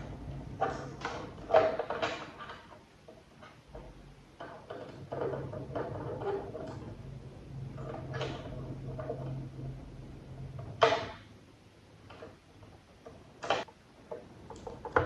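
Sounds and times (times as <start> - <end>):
hard objects scraping and knocking: 0.0 - 11.3
steady low hum: 0.0 - 15.0.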